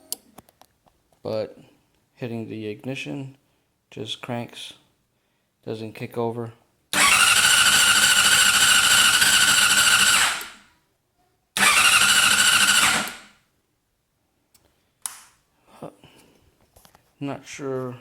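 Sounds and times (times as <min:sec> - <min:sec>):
motorcycle starter cranking: 0:07.0 - 0:10.6, 0:11.6 - 0:13.4.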